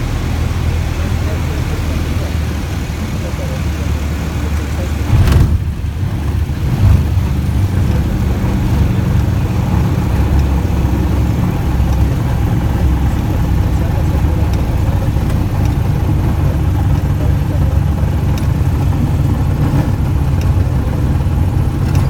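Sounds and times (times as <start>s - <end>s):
light aircraft engine rumbling: 0.0s - 22.0s
sharp knock: 5.1s - 5.8s.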